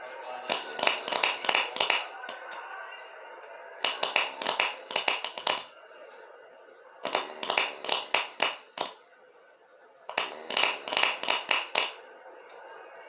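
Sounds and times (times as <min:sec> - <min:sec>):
person snoring in staccato rattle: 0:07.0 - 0:09.0.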